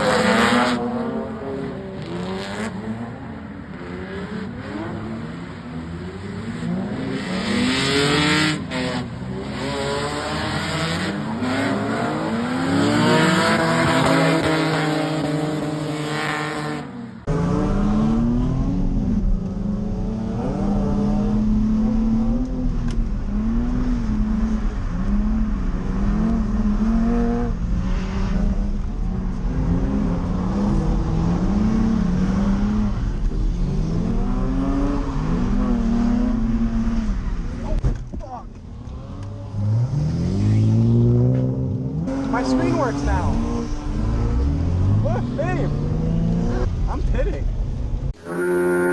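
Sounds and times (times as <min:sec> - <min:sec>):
car engine revving hard: 0:00.0 - 0:37.6, 0:39.5 - 0:47.1, 0:48.1 - 0:48.9
tyre squeal: 0:48.2 - 0:48.9.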